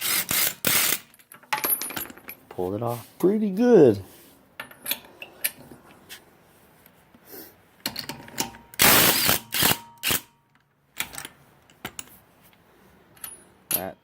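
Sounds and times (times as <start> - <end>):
impact wrench bursts: 0.0 - 1.1, 8.8 - 10.3.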